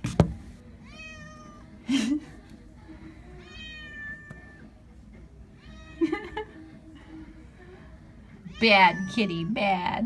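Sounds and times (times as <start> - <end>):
cat meowing: 0.8 - 1.6, 3.4 - 4.7.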